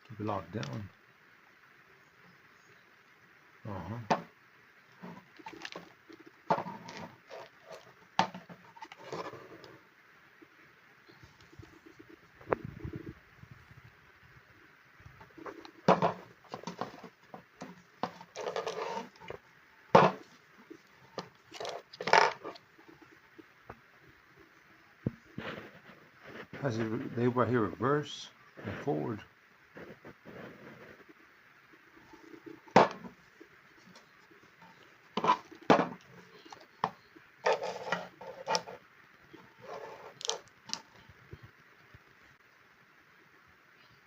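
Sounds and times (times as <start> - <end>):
scraping rustle: 4.9 - 9.9, 15.0 - 23.5, 25.2 - 41.5.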